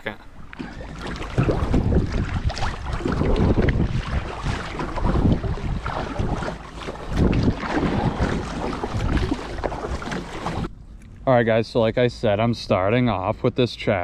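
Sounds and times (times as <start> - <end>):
wind buffeting microphone: 0.3 - 10.9.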